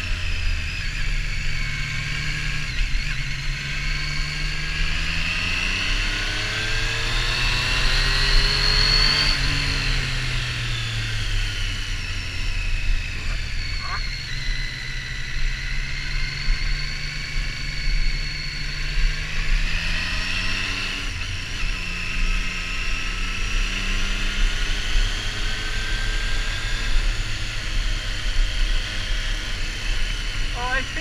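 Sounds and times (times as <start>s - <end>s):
motorcycle engine revving: 0.0s - 31.0s.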